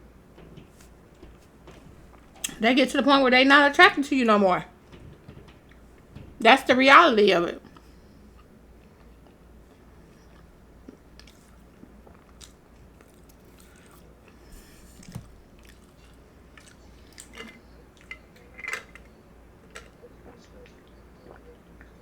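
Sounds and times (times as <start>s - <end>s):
person chewing with mouth sounds: 10.3s - 14.1s, 15.0s - 17.6s.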